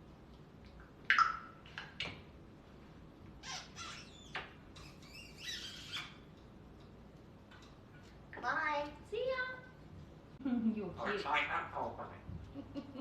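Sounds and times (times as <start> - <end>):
parrot squawking: 3.4 - 6.3, 11.0 - 12.2.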